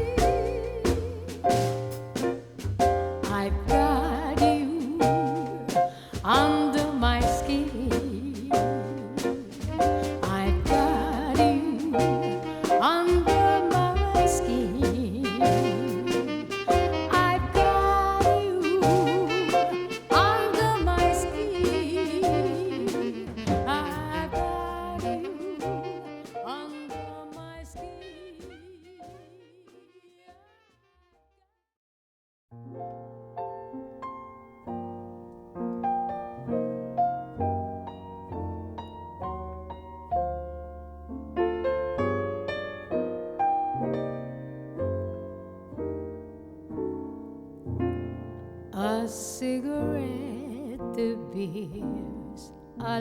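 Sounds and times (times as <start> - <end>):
bass line: 0.0 - 26.3
jazz band playing: 0.0 - 30.0.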